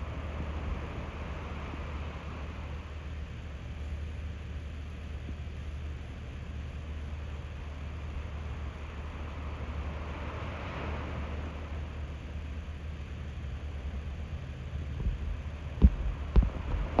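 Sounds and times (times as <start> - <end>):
constant low rumble: 0.0 - 17.0
surf washing on beach: 15.8 - 17.0.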